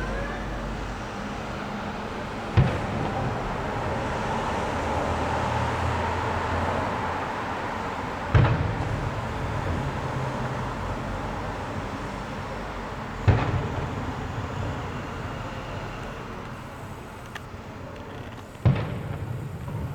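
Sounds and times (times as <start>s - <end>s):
background noise: 0.0s - 19.9s
fireworks bangs: 2.3s - 4.7s, 8.2s - 19.9s.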